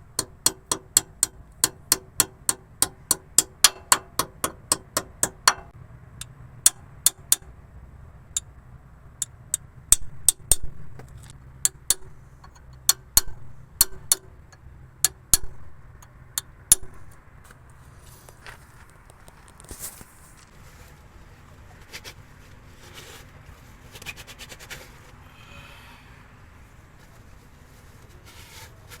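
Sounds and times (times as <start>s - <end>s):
hammer striking metal: 0.2s - 5.7s.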